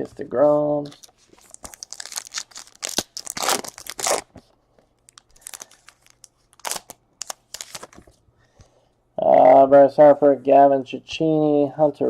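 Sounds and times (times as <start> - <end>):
wrapper tearing and crinkling: 0.9 - 4.4, 5.0 - 8.1.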